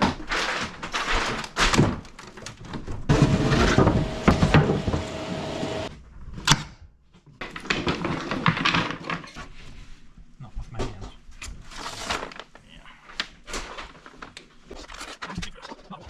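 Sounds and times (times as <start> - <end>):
knocking on wooden cabinet: 3.1 - 5.3.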